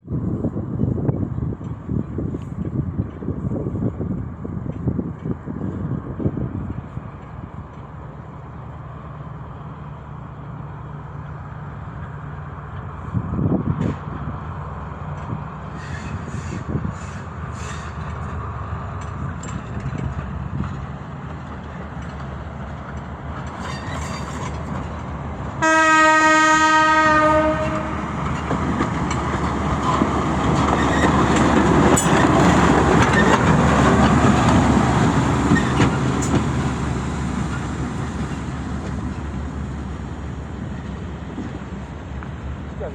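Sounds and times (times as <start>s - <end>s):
diesel locomotive engine: 0.0s - 42.9s
rail noise: 0.0s - 42.9s
locomotive horn chord: 25.6s - 28.0s.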